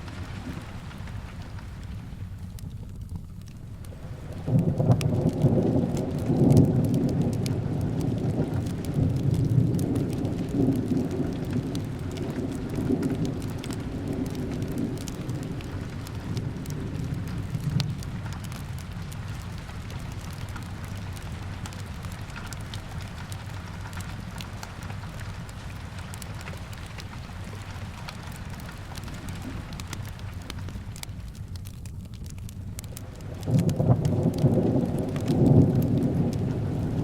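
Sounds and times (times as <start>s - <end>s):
small crackles: 0.0s - 37.0s
steady rain: 0.0s - 37.0s
thunder rumbling: 3.9s - 27.2s, 27.8s - 37.0s.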